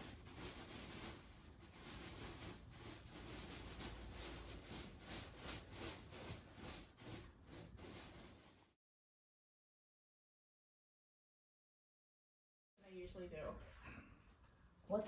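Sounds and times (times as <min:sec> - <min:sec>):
faint rubbing or scraping: 0:00.0 - 0:08.7.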